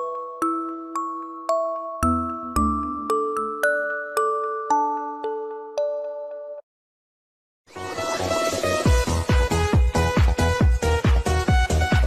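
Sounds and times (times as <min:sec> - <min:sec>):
bell-like melody: 0:00.0 - 0:06.6.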